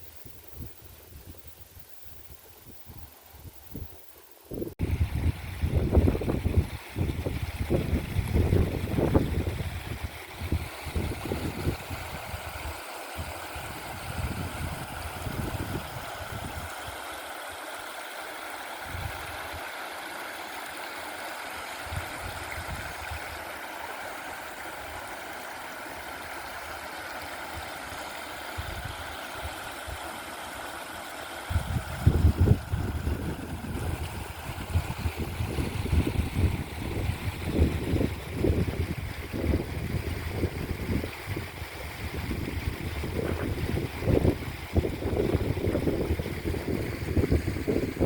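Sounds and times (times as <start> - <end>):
wind buffeting microphone: 4.5 - 16.8, 18.8 - 19.4, 21.8 - 23.4, 28.6 - 30.0, 31.5 - 48.0
stream water rushing: 4.8 - 48.0.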